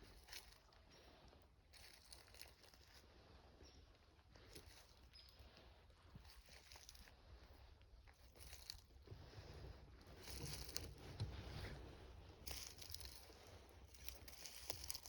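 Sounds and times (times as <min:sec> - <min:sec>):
footsteps through dry leaves: 0:01.7 - 0:03.0, 0:06.2 - 0:07.1, 0:08.2 - 0:08.9, 0:10.2 - 0:11.0, 0:12.4 - 0:15.0.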